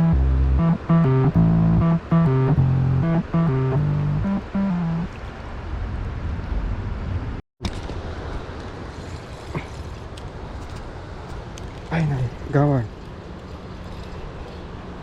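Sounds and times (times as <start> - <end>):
wind rumble on microphone: 5.1 - 10.8.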